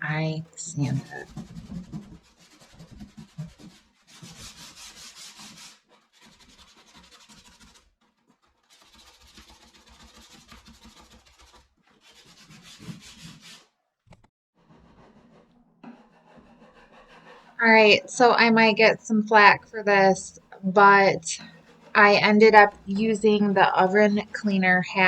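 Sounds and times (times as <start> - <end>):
sandpaper rubbing on wood: 1.3 - 13.7, 14.6 - 17.6.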